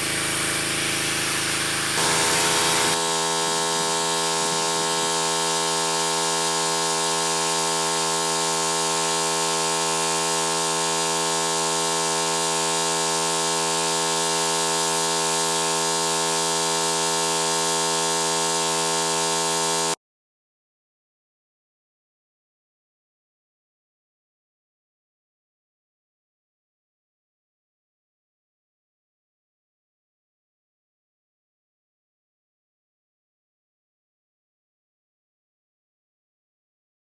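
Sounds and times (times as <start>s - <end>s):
pressure washer running: 0.0s - 20.0s.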